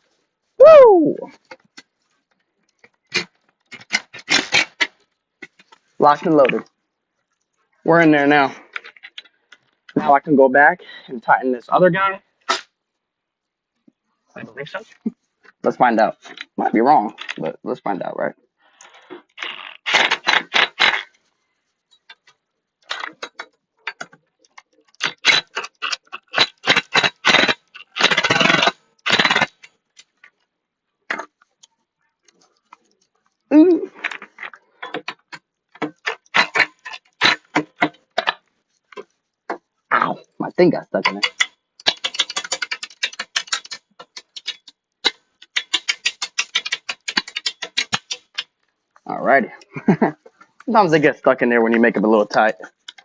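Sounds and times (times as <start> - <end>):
socket ratchet clicking: 41.2 - 44.8, 45.4 - 48.4.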